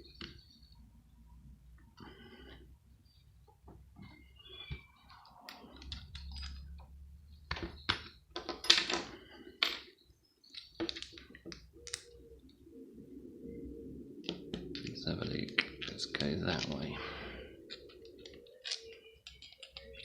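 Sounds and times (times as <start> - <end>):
hand tools clicking and scraping: 14.6 - 20.0.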